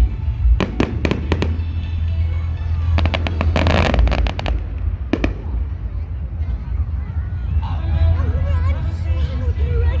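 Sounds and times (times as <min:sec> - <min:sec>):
low rumble: 0:00.0 - 0:10.0
fireworks bangs and crackling: 0:00.4 - 0:01.8, 0:03.0 - 0:07.6.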